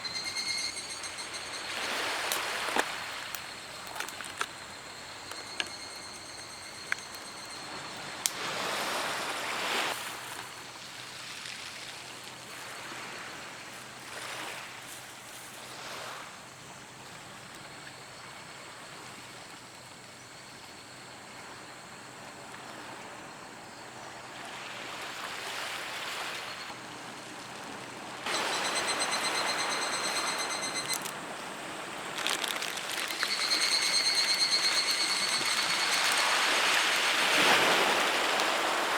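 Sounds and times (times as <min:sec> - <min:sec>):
waves washing on shore: 0:28.3 - 0:38.9.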